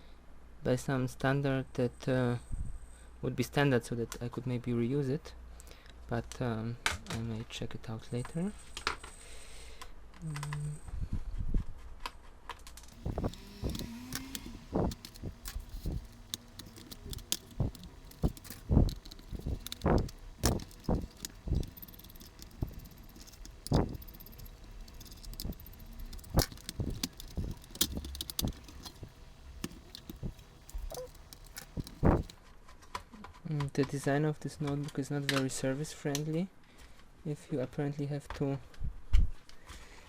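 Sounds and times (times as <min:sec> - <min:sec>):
laptop parts clicking and knocking: 0:12.9 - 0:32.4.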